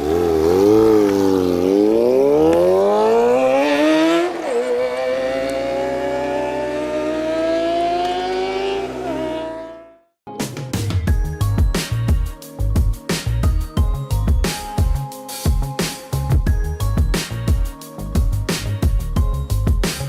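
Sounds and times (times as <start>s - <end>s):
motorcycle accelerating: 0.0s - 10.2s
music: 10.3s - 20.0s.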